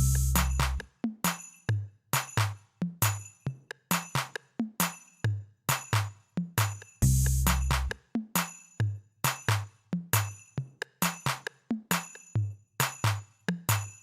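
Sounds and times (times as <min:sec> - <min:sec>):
drum machine hits: 0:00.0 - 0:00.8
low bass notes: 0:00.0 - 0:00.8.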